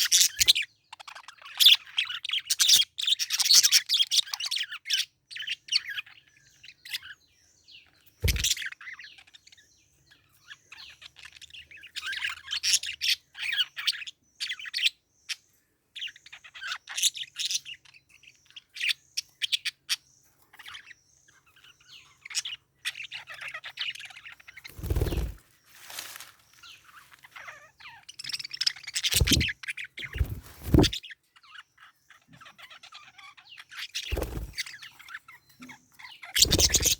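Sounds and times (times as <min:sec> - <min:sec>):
parakeet chirping: 0:08.2 - 0:09.3, 0:27.3 - 0:31.6, 0:36.0 - 0:36.9
dull thump: 0:29.2 - 0:29.5, 0:30.2 - 0:31.0
low bumping noise: 0:29.2 - 0:29.5.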